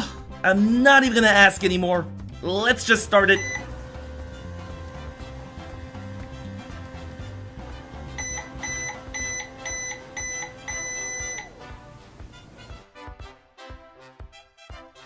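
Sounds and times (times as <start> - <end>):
background music: 0.0 - 15.0
microwave oven humming: 2.5 - 12.7
microwave beeping: 2.6 - 12.7.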